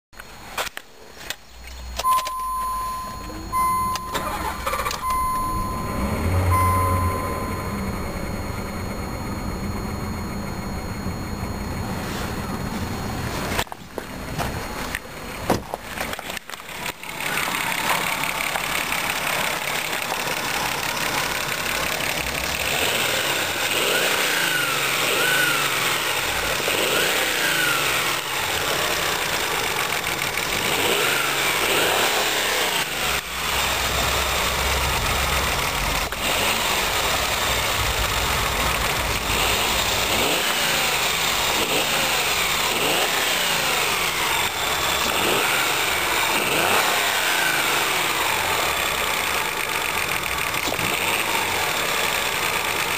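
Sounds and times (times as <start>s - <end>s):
engine starting and running: 0.3s - 52.9s
engine knocking: 16.6s - 26.7s, 27.8s - 31.9s, 33.0s - 52.9s.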